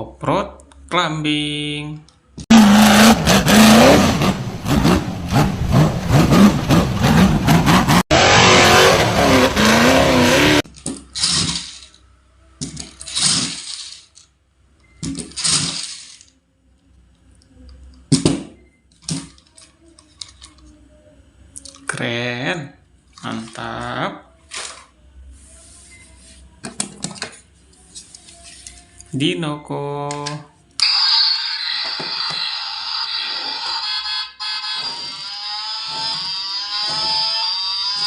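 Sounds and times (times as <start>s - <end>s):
toy car engine sound effect: 30.8s - 38.0s.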